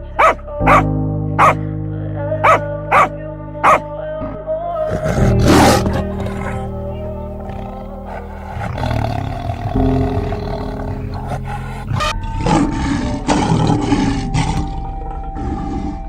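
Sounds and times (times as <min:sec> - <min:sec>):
background music: 0:00.0 - 0:16.0
animal calling loudly: 0:00.2 - 0:00.8, 0:07.4 - 0:16.0.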